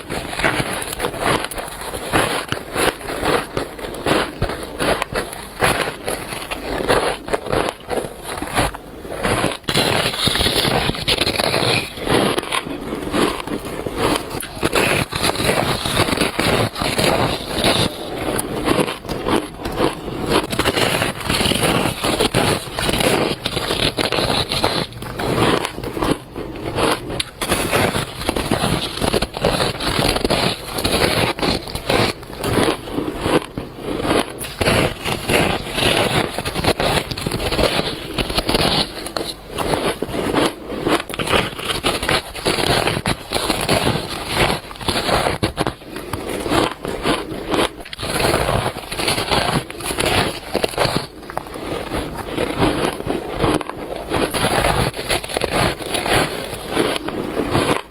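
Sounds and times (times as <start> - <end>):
chewing crunchy shaved ice: 0.0 - 57.9.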